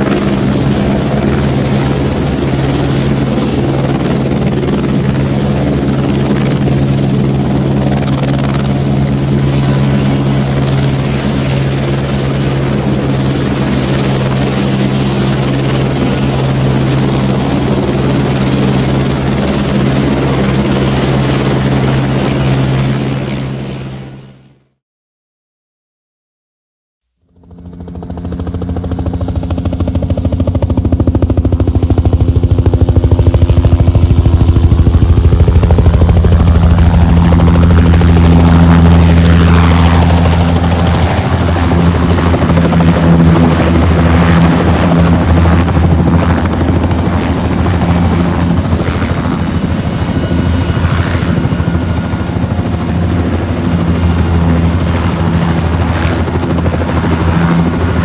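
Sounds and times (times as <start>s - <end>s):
helicopter rotor chop: 0.0s - 24.3s, 27.4s - 58.0s
helicopter high whine: 0.0s - 24.6s, 27.4s - 58.0s.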